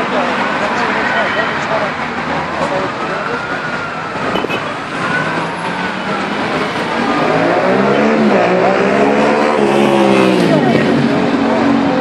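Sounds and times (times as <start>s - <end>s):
traffic noise: 0.0s - 12.0s
vehicle engine revving: 4.0s - 12.0s.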